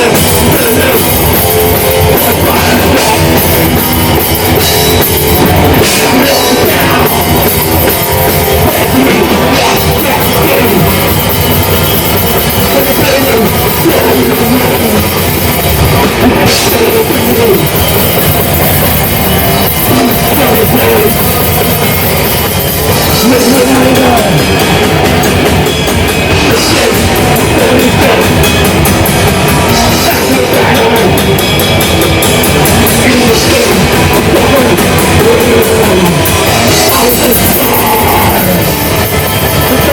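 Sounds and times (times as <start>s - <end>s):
live death metal band: 0.0s - 39.9s.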